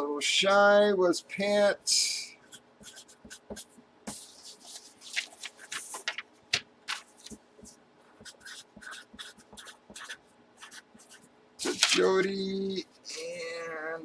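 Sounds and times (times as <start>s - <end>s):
scratching strokes: 2.4s - 6.1s, 7.1s - 12.2s.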